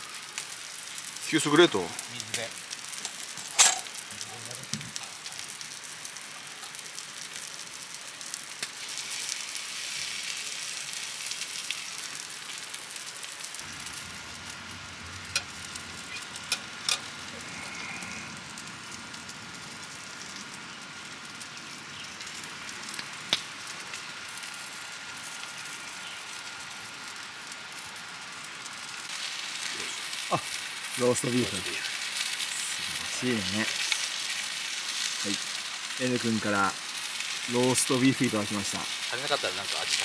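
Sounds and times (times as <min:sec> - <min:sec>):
meat sizzling on griddle: 0:00.0 - 0:40.0.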